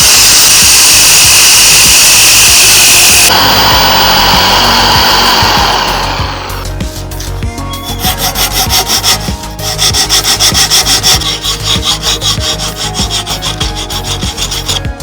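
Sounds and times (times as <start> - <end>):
rubbing strokes on wood: 4.2 - 15.0.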